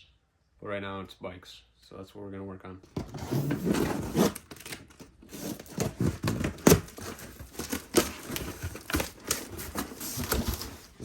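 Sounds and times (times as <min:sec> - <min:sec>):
packaging rustling and tearing: 0:03.1 - 0:11.0.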